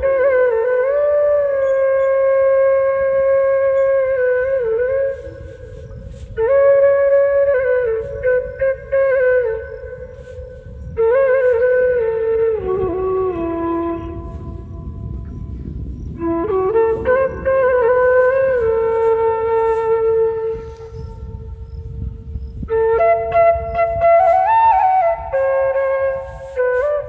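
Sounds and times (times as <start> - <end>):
slow flute melody: 0.0 - 27.0.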